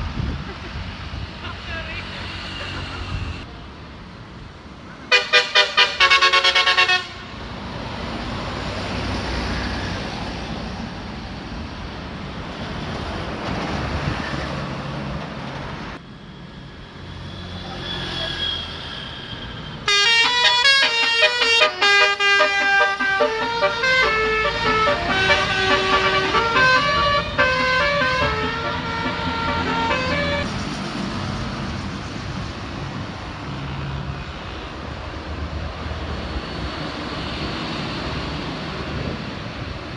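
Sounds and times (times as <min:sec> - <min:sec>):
bus engine: 0:00.0 - 0:39.9
bus musical air horn: 0:05.1 - 0:07.4, 0:19.9 - 0:30.5.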